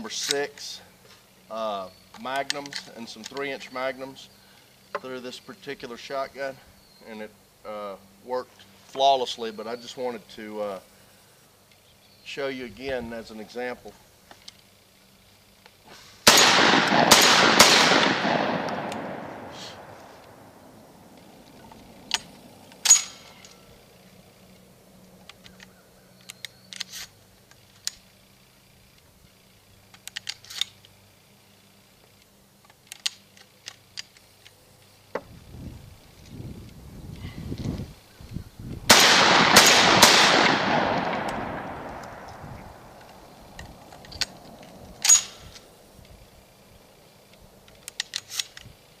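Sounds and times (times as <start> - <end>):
shotgun metallic clicks: 0.2 - 0.6, 2.0 - 3.6, 15.4 - 29.1, 29.7 - 31.0, 32.0 - 35.2, 38.9 - 46.2, 47.2 - 49.0
shotgun firing: 16.2 - 20.4, 38.9 - 42.3.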